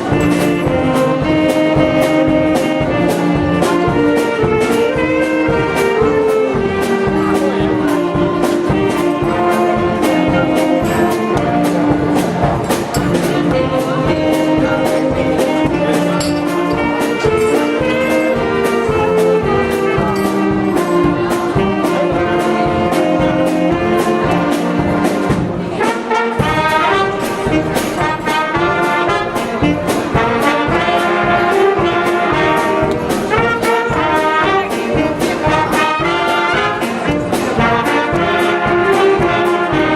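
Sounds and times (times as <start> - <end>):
orchestra playing up-tempo music: 0.0 - 39.9
steady drum beat: 0.0 - 39.9
trumpets and trombones: 0.0 - 39.9.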